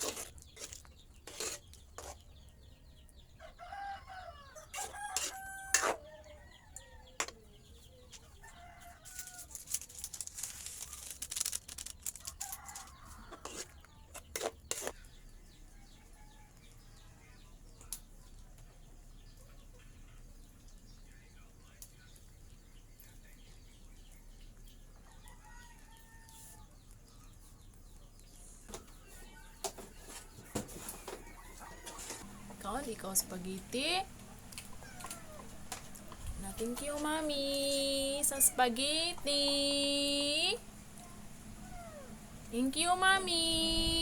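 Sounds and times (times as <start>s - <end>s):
chickens clucking: 28.7s - 43.9s.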